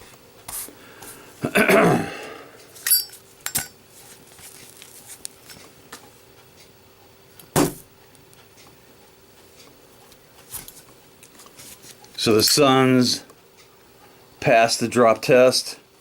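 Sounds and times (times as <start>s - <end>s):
ringing metal clink: 2.8s - 3.8s.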